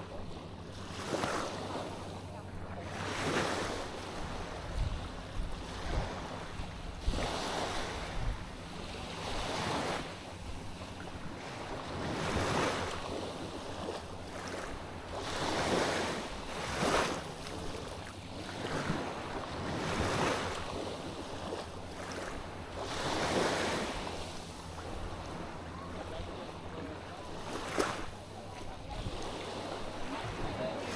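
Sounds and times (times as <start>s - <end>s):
low steady hum: 0.0s - 30.9s
sea waves on beach: 0.0s - 30.9s
wind buffeting microphone: 3.6s - 13.2s.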